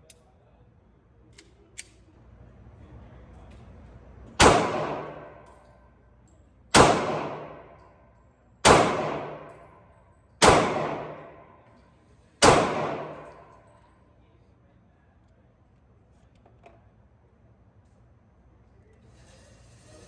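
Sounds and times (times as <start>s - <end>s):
pistol shots echoing: 4.4s - 5.5s, 6.7s - 7.8s, 8.6s - 9.8s, 10.4s - 11.6s, 12.4s - 13.6s.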